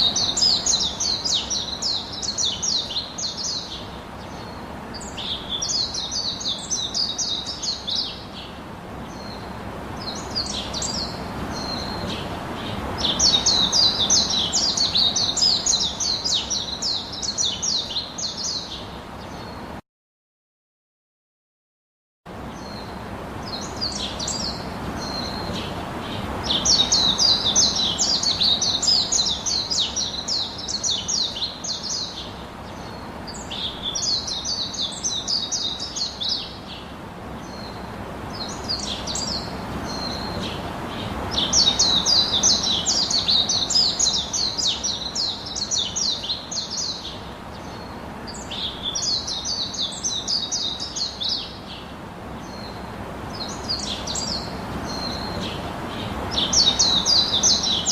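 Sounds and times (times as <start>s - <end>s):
birds chirping: 0.0s - 19.8s, 22.4s - 57.9s
low background hiss: 22.3s - 57.9s.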